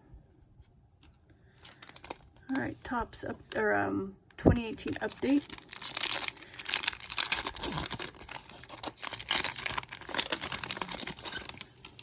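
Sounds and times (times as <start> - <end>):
wrapper tearing and crinkling: 1.6 - 2.3, 4.8 - 12.0.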